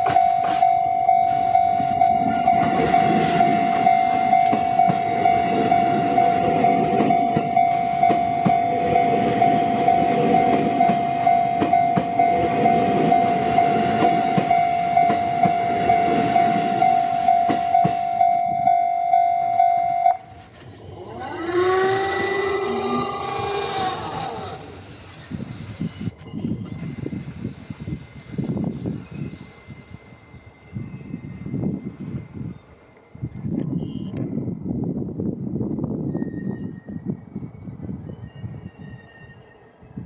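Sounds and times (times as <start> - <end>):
level crossing alarm ringing: 0.0 - 20.3
rising whine: 0.0 - 25.0
train rumbling and wheels clacking: 0.0 - 40.0.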